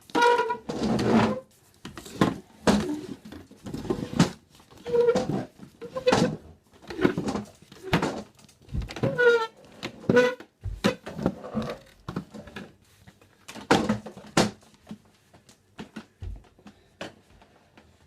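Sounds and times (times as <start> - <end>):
chair legs scraping on floor: 0.1 - 12.7.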